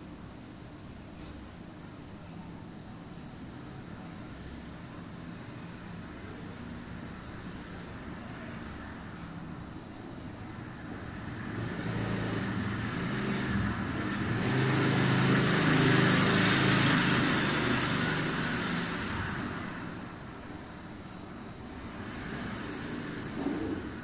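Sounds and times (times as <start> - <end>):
vehicle passing by: 10.3 - 24.0.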